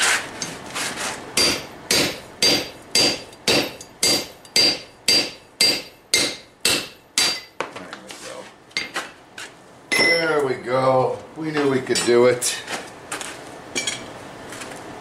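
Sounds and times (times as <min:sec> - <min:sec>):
hammer striking steel: 0:01.4 - 0:07.6, 0:08.8 - 0:09.0, 0:09.9 - 0:10.3.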